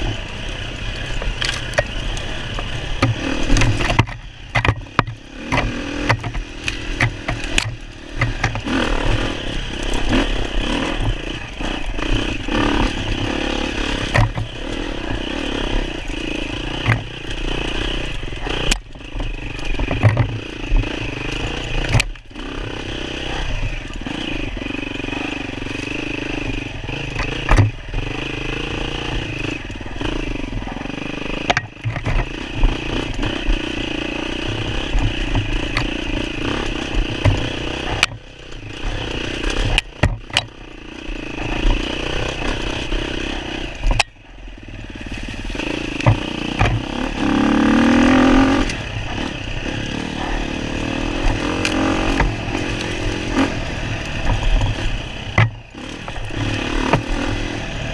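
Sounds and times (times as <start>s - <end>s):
dirt bike engine revving: 0.0s - 57.9s
knocks and clatter over rough ground: 0.0s - 57.9s.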